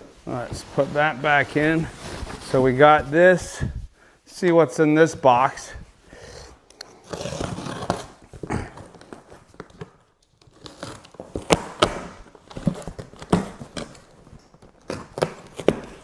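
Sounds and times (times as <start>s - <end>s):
cardboard box rustling: 0.0s - 3.4s.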